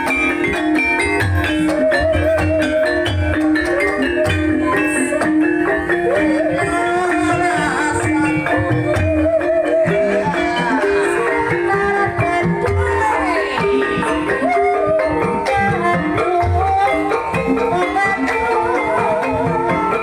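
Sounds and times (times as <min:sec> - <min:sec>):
rapid pitched percussion: 0:00.0 - 0:20.0
wavering vibrato melody: 0:00.0 - 0:20.0.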